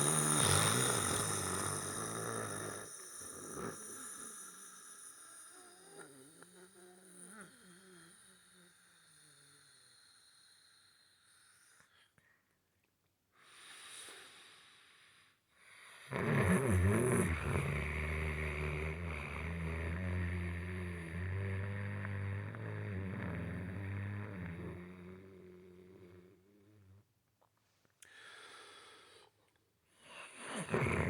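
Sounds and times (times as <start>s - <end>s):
loud droning snore: 0.0s - 11.6s, 15.9s - 27.0s, 30.0s - 31.0s
soft breath: 28.0s - 30.6s.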